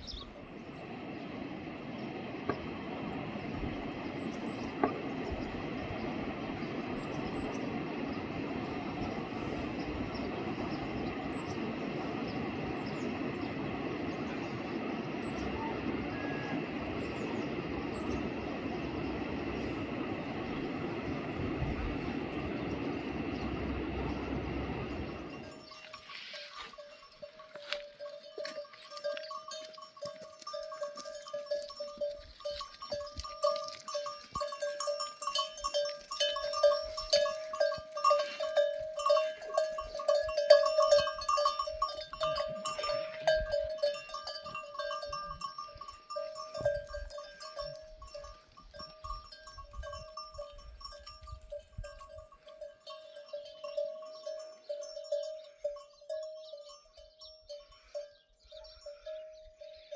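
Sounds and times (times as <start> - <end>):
animal bells jangling: 25.0 - 59.9.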